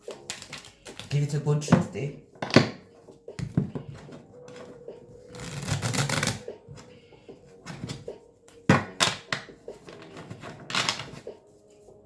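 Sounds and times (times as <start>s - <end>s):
cards being shuffled: 0.0s - 1.3s, 4.5s - 6.4s.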